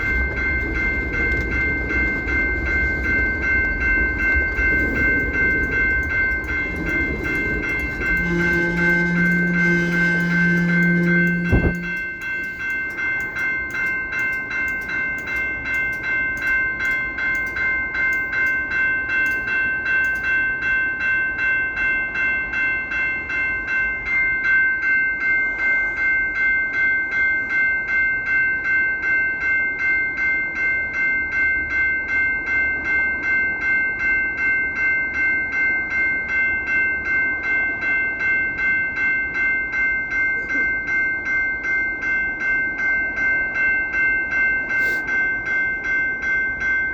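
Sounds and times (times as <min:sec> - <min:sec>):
passing train rumble: 0:00.0 - 0:20.3
crossing bell ringing: 0:00.0 - 0:46.9.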